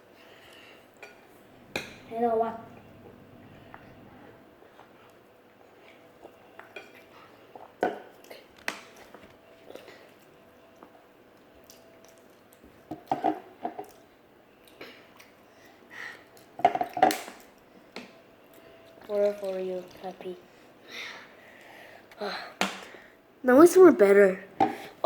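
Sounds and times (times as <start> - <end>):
chewing: 2.7 - 13.0, 13.8 - 17.7.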